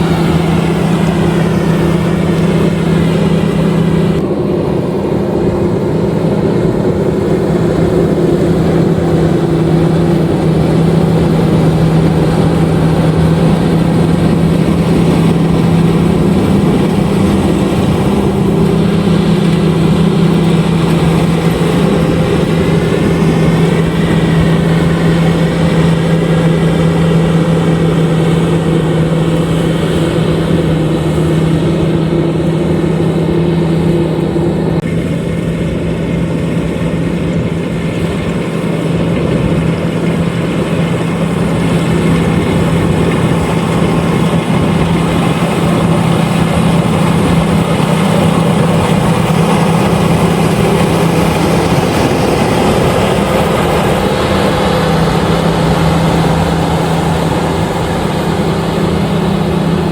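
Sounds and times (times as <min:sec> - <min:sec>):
combine harvester running: 0:00.0 - 0:59.9.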